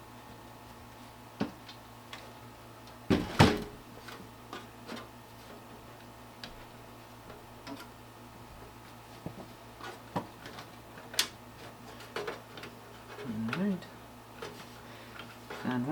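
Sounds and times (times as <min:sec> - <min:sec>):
faint steady hum: 0:00.0 - 0:15.9
computer parts being handled: 0:09.8 - 0:13.6.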